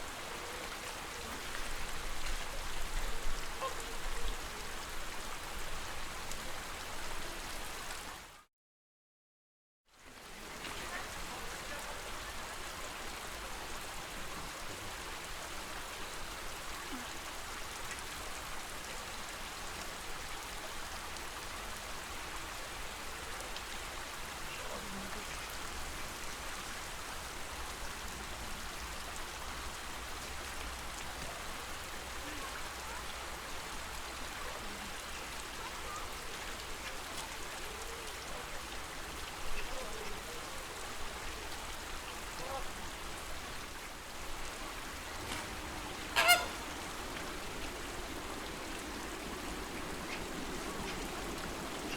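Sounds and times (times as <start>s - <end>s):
birds splashing through shallow water: 34.0s - 51.9s.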